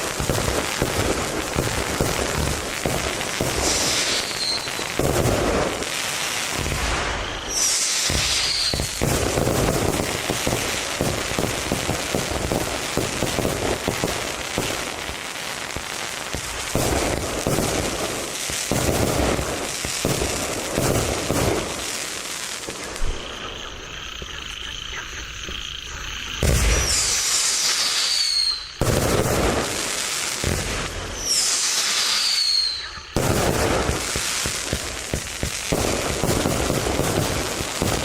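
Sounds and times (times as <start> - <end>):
fireworks launch thumps and crackling: 0.0 - 23.5, 25.0 - 38.0
high firework whistle: 1.5 - 14.9, 26.4 - 38.0.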